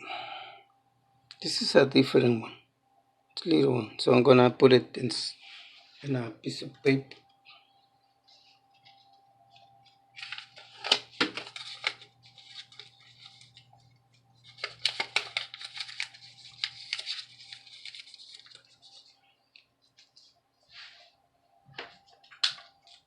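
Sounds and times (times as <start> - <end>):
paper rustling and crinkling: 8.3 - 21.1, 21.7 - 23.0.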